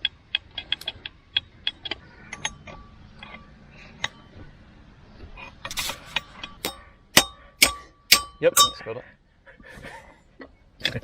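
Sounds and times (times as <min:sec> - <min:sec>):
metal rattling scrape: 0:05.3 - 0:06.9.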